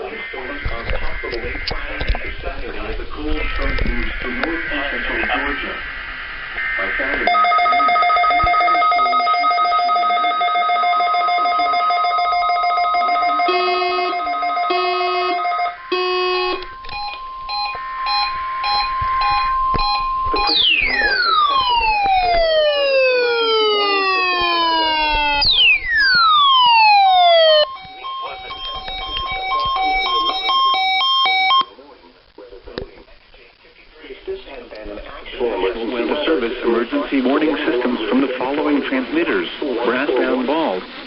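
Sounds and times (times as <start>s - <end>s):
steady electronic tones: 0.0s - 31.8s
short electronic beeps: 7.3s - 21.8s
tones gliding down: 11.1s - 30.8s.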